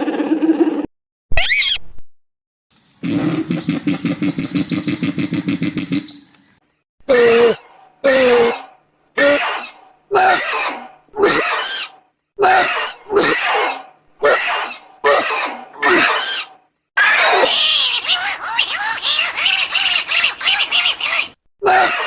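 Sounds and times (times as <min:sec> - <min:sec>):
creature chattering squeal: 0:00.0 - 0:01.8, 0:09.2 - 0:22.0
creature squealing calls: 0:00.0 - 0:01.8, 0:07.1 - 0:22.0.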